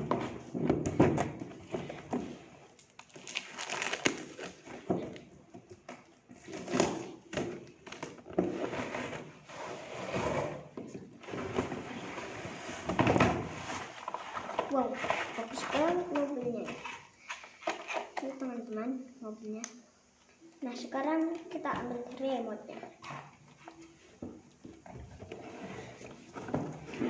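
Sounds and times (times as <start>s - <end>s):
cardboard packaging rustling: 1.3s - 5.2s.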